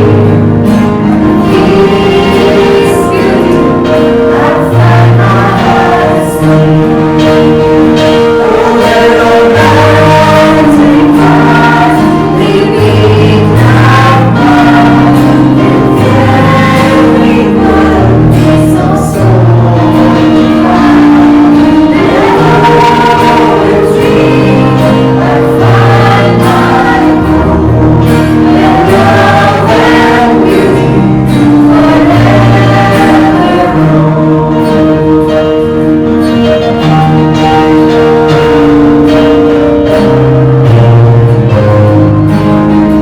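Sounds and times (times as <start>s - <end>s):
choir singing: 0.0s - 43.0s.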